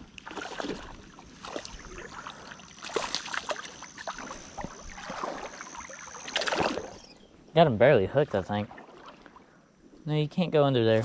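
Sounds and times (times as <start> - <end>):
fish splashing at water surface: 0.0 - 7.0.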